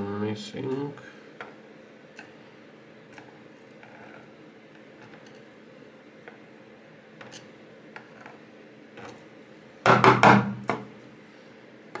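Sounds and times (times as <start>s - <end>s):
lock knocking on hard surface: 9.9s - 10.8s.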